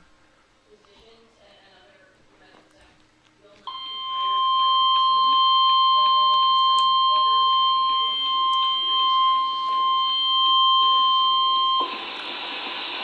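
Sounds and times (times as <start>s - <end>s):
emergency alert warning tone: 3.7s - 12.7s
steady hiss: 11.8s - 13.0s.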